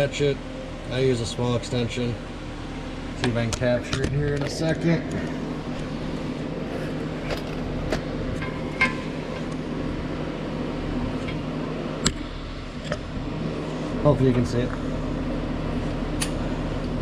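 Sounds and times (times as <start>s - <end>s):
steady hum: 0.0s - 17.0s.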